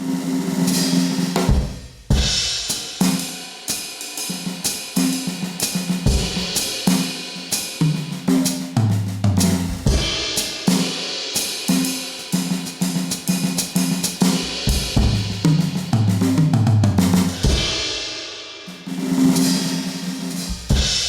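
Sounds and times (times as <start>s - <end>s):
electronic drum kit groove: 5.2s - 10.9s, 11.8s - 17.8s.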